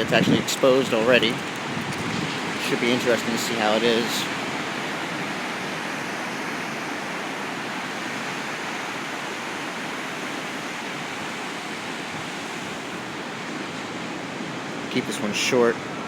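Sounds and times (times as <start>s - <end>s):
ocean surf washing onto beach: 0.0s - 16.0s.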